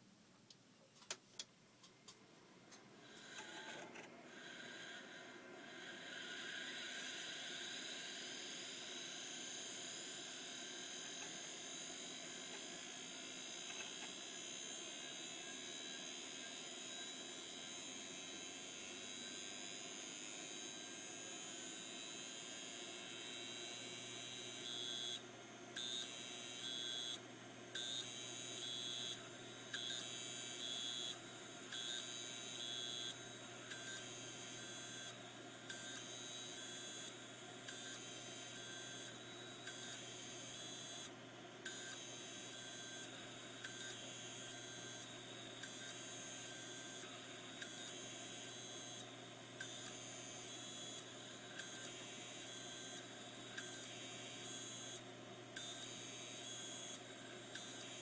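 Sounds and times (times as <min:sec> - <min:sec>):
hard drive steady whine: 0:01.8 - 0:58.0.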